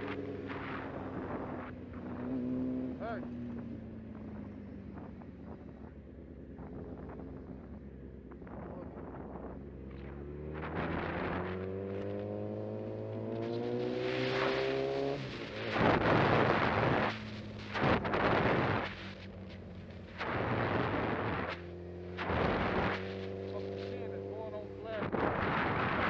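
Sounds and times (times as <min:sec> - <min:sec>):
motorcycle engine accelerating: 0:00.0 - 0:26.0
wind noise on microphone: 0:15.6 - 0:19.0, 0:25.0 - 0:26.0.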